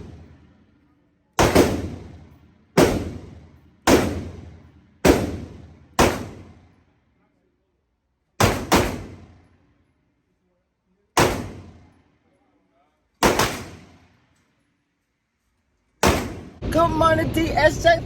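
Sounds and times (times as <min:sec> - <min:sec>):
gunshots with echo: 0:00.0 - 0:00.6, 0:01.4 - 0:06.8, 0:08.4 - 0:09.5, 0:11.2 - 0:12.0, 0:13.2 - 0:14.2, 0:16.0 - 0:16.6.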